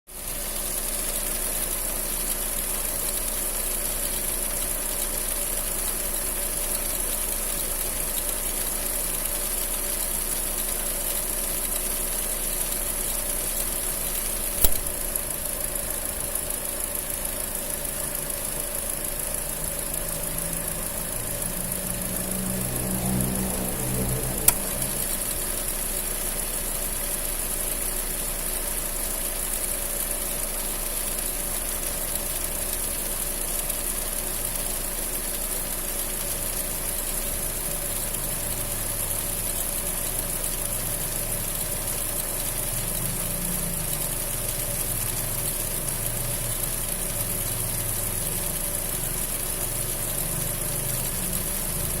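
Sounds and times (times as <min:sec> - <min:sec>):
car engine idling: 0:00.1 - 0:52.0
drive belt noise: 0:00.1 - 0:52.0.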